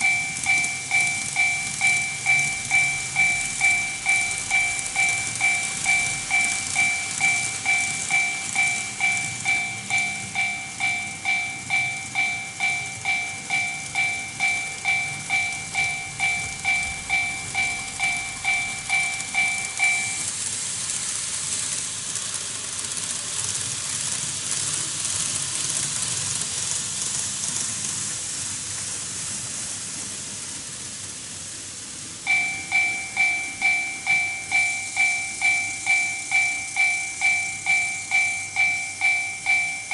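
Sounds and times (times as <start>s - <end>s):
two-tone crossing bell: 0.0s - 20.3s, 32.3s - 39.9s
model trains hissing on track: 0.0s - 39.9s.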